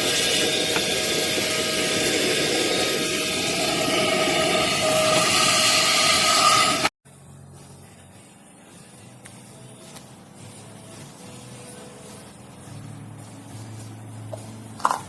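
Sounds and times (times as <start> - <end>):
vacuum cleaner running: 0.0 - 6.9.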